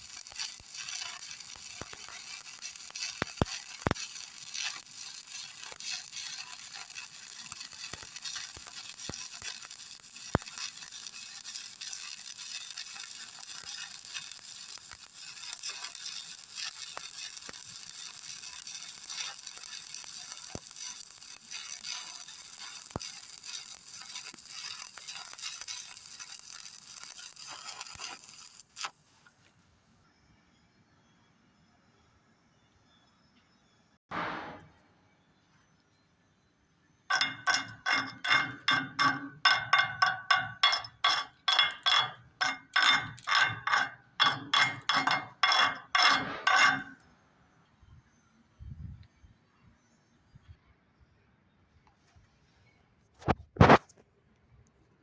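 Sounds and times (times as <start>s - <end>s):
welding arc crackling and sizzling: 0.0s - 29.5s, 37.1s - 47.0s, 53.2s - 53.8s
sharp pops: 53.2s - 53.9s.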